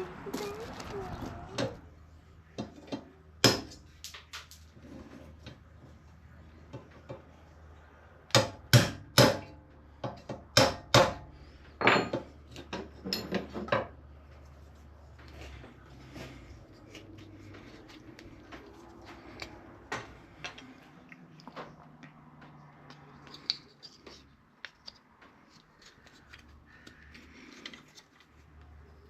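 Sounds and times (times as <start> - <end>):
sharp knocks and clanks: 11.8 - 14.0.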